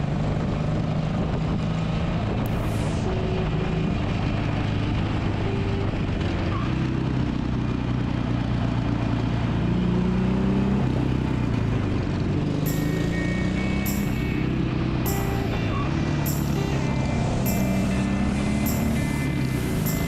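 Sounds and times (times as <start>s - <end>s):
rushing wind noise: 0.0s - 6.4s
motorcycle engine running: 0.0s - 20.0s.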